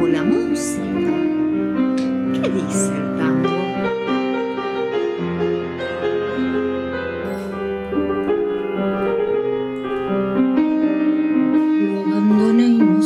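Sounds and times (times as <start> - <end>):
keyboard melody of held notes: 0.0 - 13.0.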